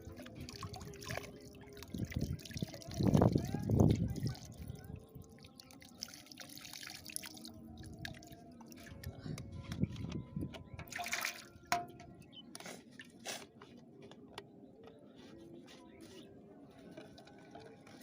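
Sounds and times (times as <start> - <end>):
water dripping and splashing: 0.0 - 12.0.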